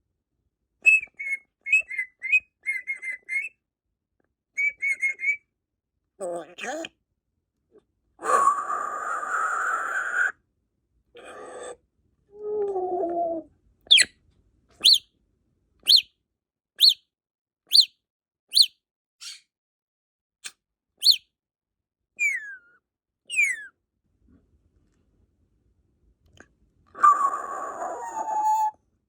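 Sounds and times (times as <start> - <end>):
parrot harsh raspy noise: 8.2 - 10.3, 13.9 - 14.1, 14.8 - 15.0, 15.9 - 16.1
parrot sharp high chirps: 13.9 - 14.1, 14.8 - 15.1, 15.9 - 16.1, 16.8 - 17.0, 17.7 - 17.9, 18.5 - 19.5, 21.0 - 21.2, 23.3 - 23.7
parrot falling whistles: 14.8 - 15.0.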